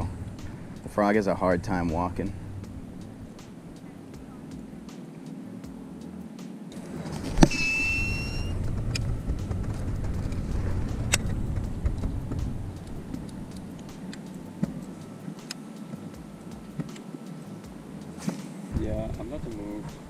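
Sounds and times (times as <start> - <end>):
wind buffeting microphone: 0.0 - 5.1, 5.7 - 20.0
fishing reel line whine: 5.4 - 20.0.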